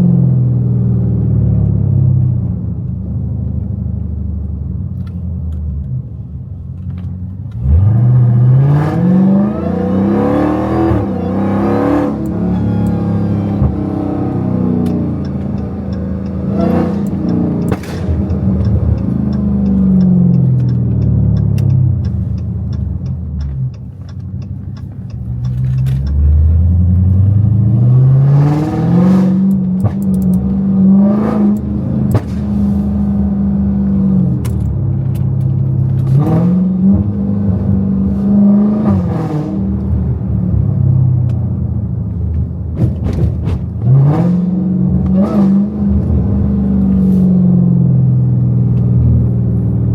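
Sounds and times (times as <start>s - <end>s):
car engine accelerating: 0.0s - 49.9s
exhaust crackles and pops: 14.7s - 26.6s.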